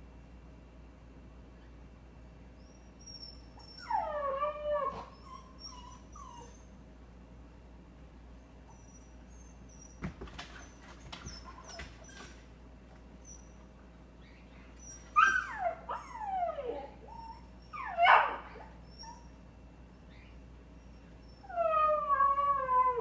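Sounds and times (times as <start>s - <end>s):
dog whining: 2.6s - 6.7s, 8.7s - 12.4s, 14.3s - 19.4s, 20.1s - 23.0s.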